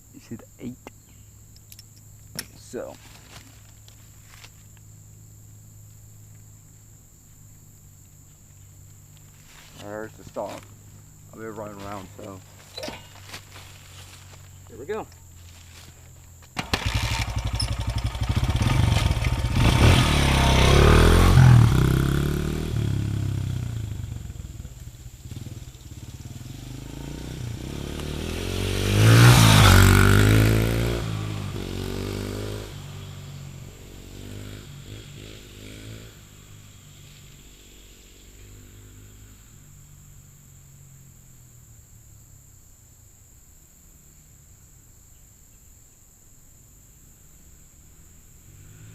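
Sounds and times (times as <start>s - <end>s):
dirt bike engine revving: 16.6s - 39.9s, 48.5s - 48.9s.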